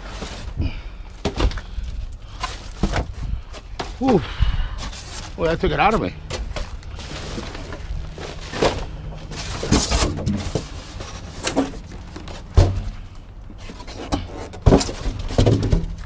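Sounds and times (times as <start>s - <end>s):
low steady hum: 0.0s - 16.0s
scrap items knocking and banging: 2.4s - 4.2s, 6.3s - 16.0s.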